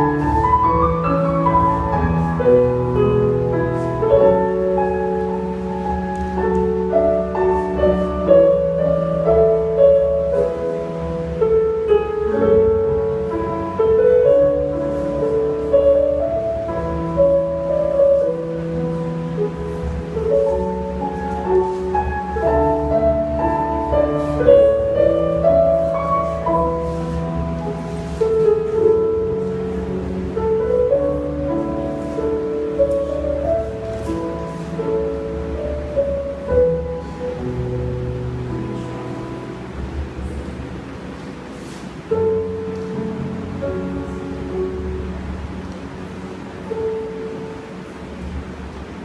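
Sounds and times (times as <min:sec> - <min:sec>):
slow piano music: 0:00.0 - 0:49.0.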